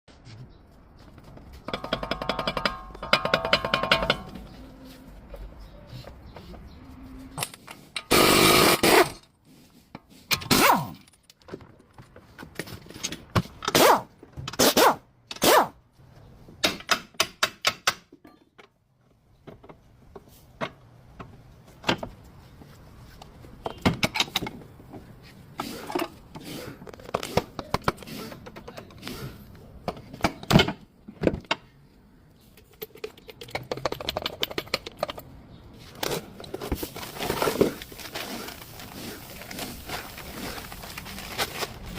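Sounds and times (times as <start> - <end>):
hand tools knocking on metal: 1.7 - 4.5.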